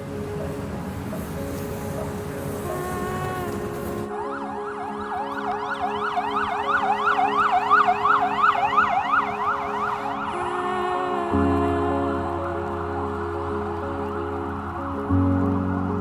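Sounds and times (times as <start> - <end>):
background music: 0.0 - 16.0
emergency siren yelping: 4.2 - 10.3.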